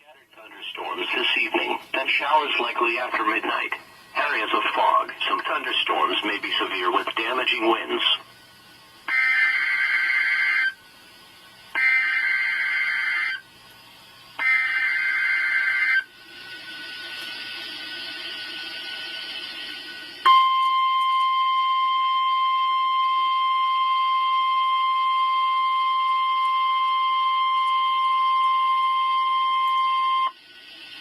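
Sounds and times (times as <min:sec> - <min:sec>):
radio static hiss: 0:00.0 - 0:08.4
high steady alarm tone: 0:09.1 - 0:10.8, 0:11.8 - 0:13.4, 0:14.4 - 0:16.7, 0:20.2 - 0:30.4.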